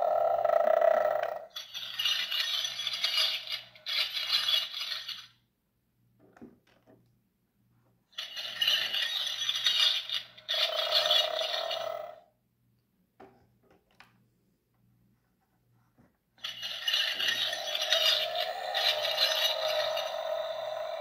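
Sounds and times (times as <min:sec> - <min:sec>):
keys rattling and jingling: 0:08.2 - 0:10.9, 0:16.4 - 0:21.0.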